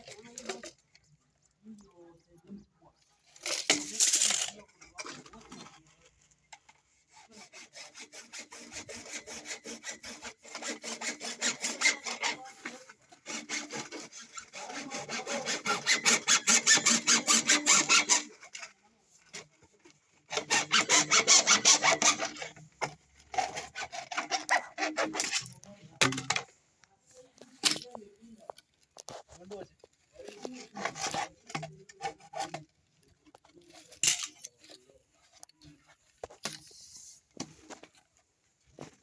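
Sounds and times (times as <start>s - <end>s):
hand saw cutting: 7.1s - 18.7s, 20.2s - 26.5s, 30.2s - 32.7s.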